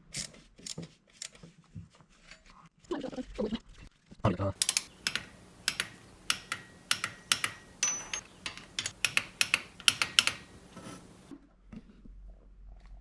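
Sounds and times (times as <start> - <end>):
metal hand tools clicking: 4.6 - 11.3.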